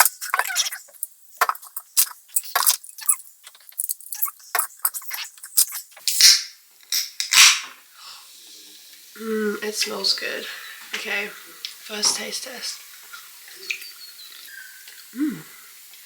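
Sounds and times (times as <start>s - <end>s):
can cracking open with fizz: 0.0s - 9.1s.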